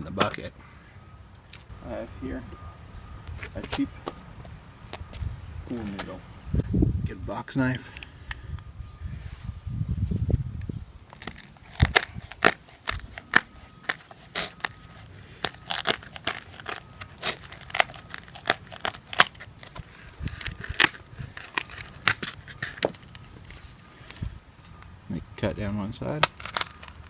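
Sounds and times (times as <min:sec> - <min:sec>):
crackling clicks of foam: 0:11.0 - 0:24.3, 0:26.2 - 0:27.0.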